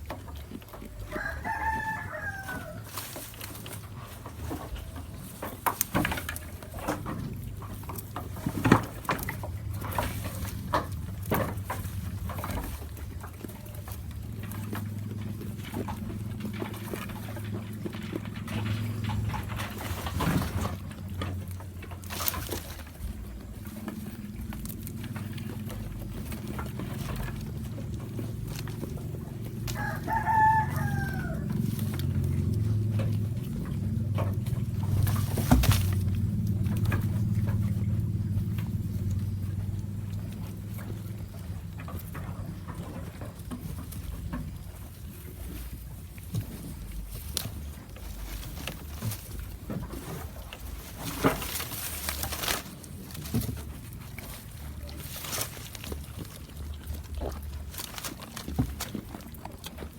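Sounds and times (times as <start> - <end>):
goat chewing crunchy food: 0.0 - 59.9
rooster crowing: 1.0 - 3.1, 29.4 - 32.6
low hum: 6.2 - 59.9.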